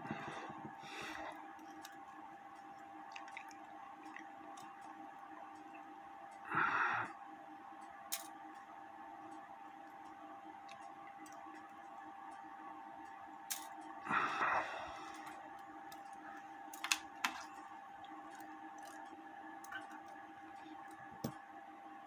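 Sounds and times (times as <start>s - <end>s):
steady faint hum: 0.0s - 22.0s.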